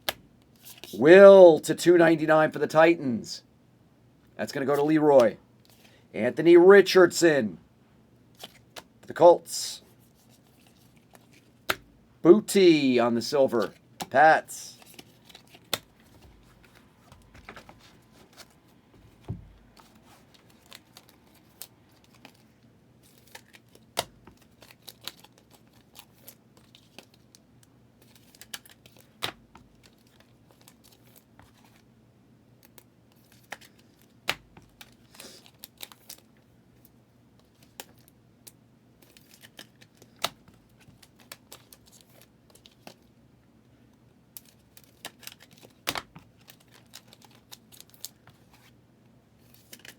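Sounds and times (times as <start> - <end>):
foil wrappers crinkling and tearing: 19.9 - 27.4, 46.4 - 48.2.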